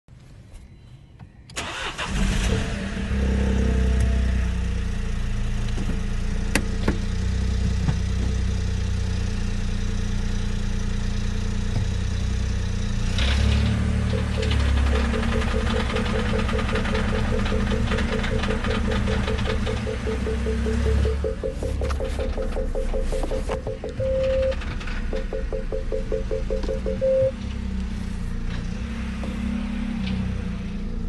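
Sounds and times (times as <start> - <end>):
car engine cranking and idling: 1.2 - 31.0
sharp clicks: 14.1 - 27.3
fast even ticking: 14.1 - 27.4.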